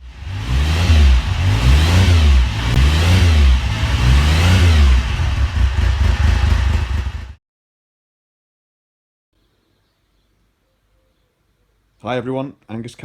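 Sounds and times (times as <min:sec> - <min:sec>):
engine revving: 0:00.0 - 0:07.4.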